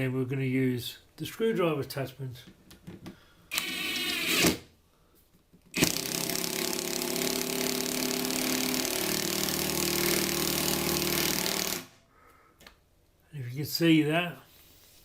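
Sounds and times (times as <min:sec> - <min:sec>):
impact wrench motor running: 0:03.5 - 0:04.6, 0:05.8 - 0:12.0.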